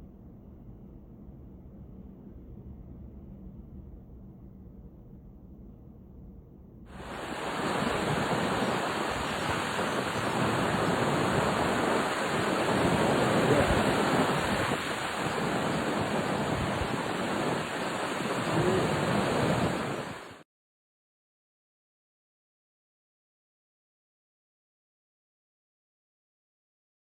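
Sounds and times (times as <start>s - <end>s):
ocean surf breaking: 6.9s - 20.4s
wind on microphone: 6.9s - 20.4s.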